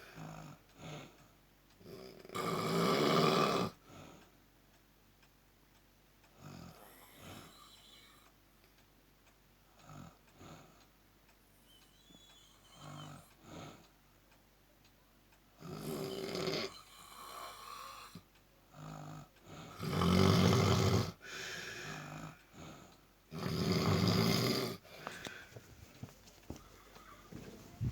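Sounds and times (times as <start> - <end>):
quiet breaths: 0.0 - 27.9
person snoring: 1.8 - 3.8, 12.6 - 13.3, 15.6 - 18.2, 18.8 - 22.4, 23.3 - 25.4.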